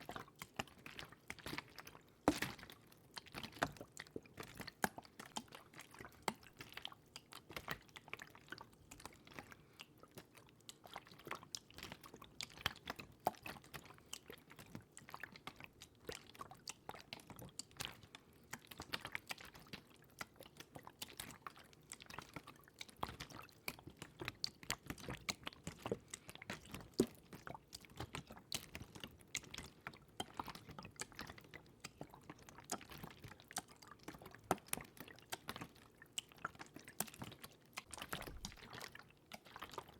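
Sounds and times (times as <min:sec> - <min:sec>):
small wet clicks and crackles: 0:00.0 - 0:39.9
water trickling: 0:30.2 - 0:39.9.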